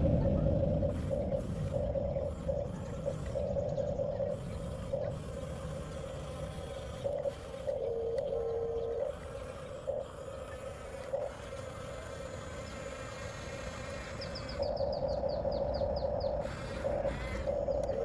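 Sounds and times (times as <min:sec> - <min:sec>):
low rumble: 0:00.0 - 0:05.1
toy bulldozer motors whining: 0:00.9 - 0:18.0.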